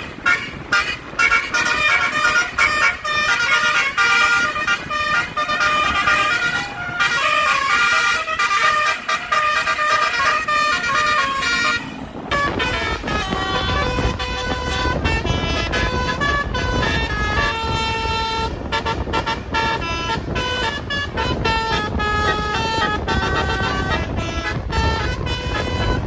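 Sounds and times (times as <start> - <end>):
bus musical horn toots: 0.0 - 26.0.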